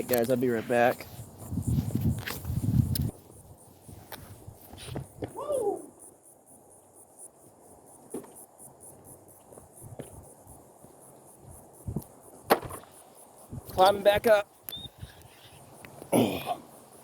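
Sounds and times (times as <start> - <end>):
person scrambling over brush: 0.0 - 2.9
insects chorus: 0.0 - 17.0.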